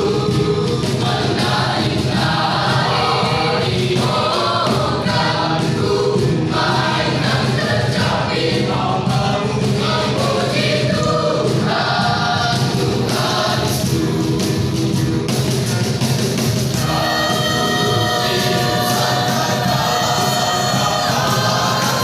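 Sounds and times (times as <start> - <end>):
choir singing gospel: 0.0 - 22.0.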